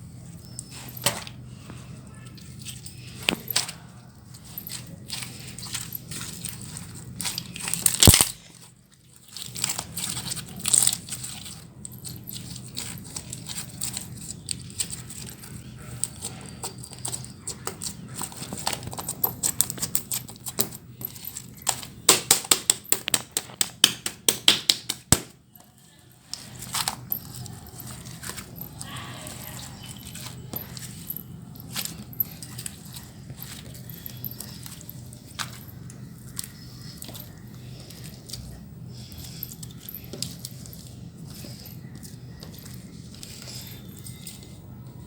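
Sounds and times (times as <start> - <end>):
slime crackling and popping: 7.2 - 11.3.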